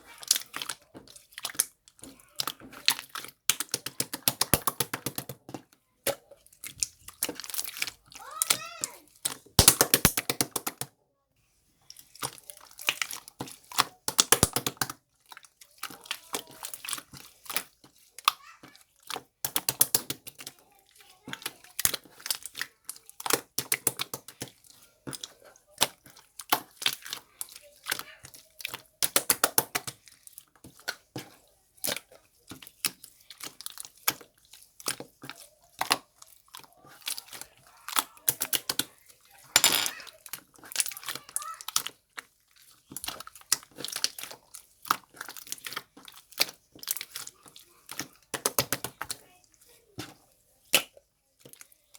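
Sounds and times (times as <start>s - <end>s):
sticky clicks and crackling pops: 9.2s - 10.9s, 14.0s - 15.0s
slime squished by hand: 9.6s - 10.8s.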